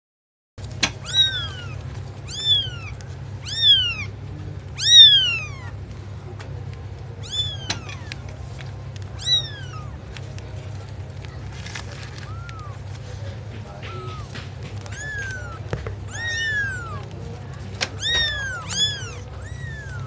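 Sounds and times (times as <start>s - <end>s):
kitten meowing: 0.8s - 4.2s, 4.8s - 5.8s, 7.2s - 10.1s, 11.8s - 13.0s, 13.6s - 20.0s.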